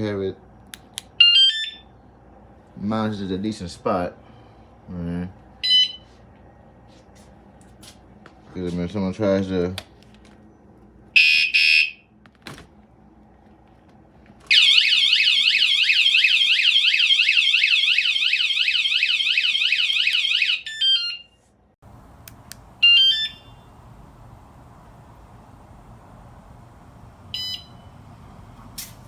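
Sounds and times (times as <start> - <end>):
warbling alarm siren: 14.5 - 21.3, 22.7 - 28.6
alarm beep: 27.3 - 27.9.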